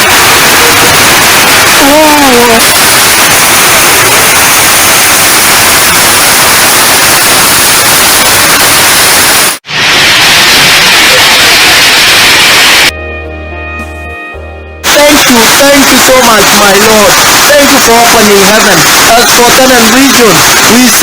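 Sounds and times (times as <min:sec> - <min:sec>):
heavy rain falling: 0:00.0 - 0:09.7, 0:14.9 - 0:21.0.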